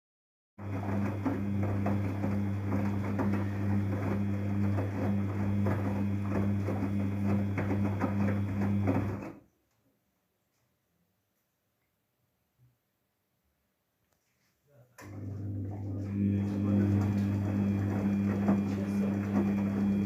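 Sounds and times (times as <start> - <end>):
air pump humming: 0.7 - 9.3, 15.9 - 20.0.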